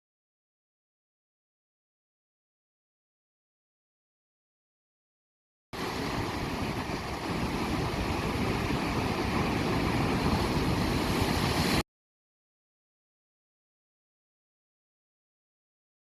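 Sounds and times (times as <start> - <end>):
ocean waves rushing: 5.8 - 11.8.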